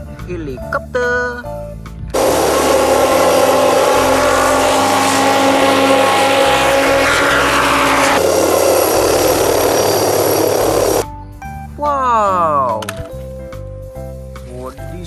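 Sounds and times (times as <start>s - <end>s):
helicopter engine and rotor: 2.2s - 11.0s.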